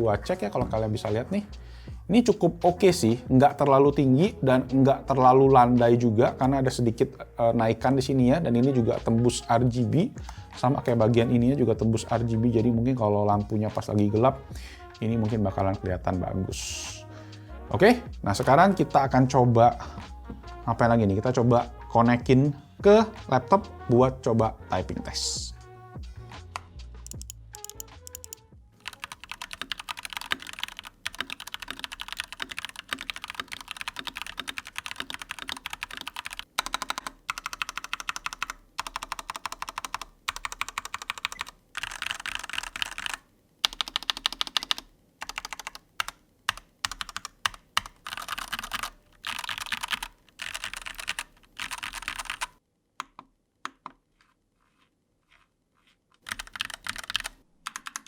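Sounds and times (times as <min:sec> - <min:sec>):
keyboard key rattle: 0:27.1 - 0:43.8
mechanical keyboard typing: 0:27.1 - 0:53.8, 0:56.2 - 0:58.0.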